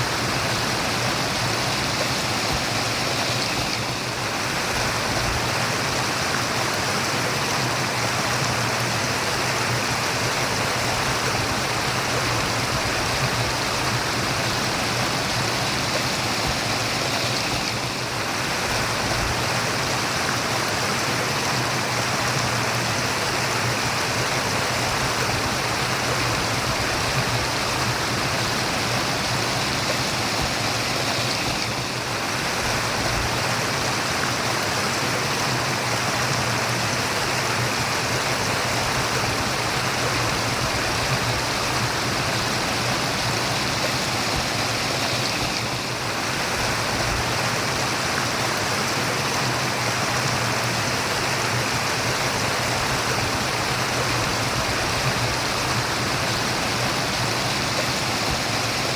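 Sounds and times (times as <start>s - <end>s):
running water murmuring: 0.0s - 58.9s.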